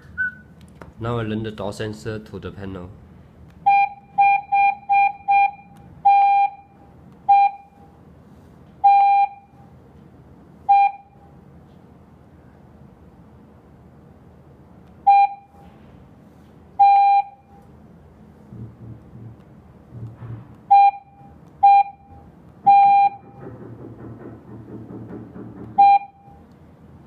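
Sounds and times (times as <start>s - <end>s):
alarm panel beeping: 3.6s - 7.8s, 8.8s - 9.6s, 10.7s - 11.2s, 15.0s - 15.6s, 16.8s - 17.6s, 20.7s - 23.4s, 25.8s - 26.4s.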